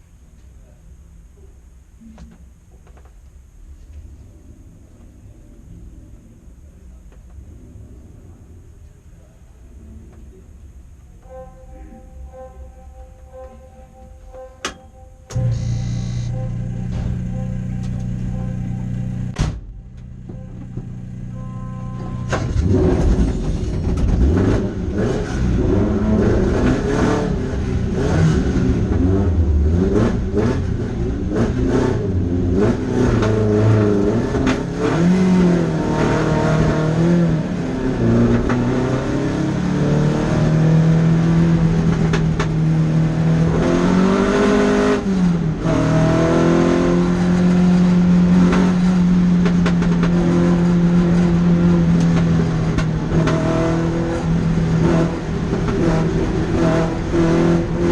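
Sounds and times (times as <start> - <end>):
sports car engines idling: 0.0 - 32.6
engine revving: 15.3 - 57.9.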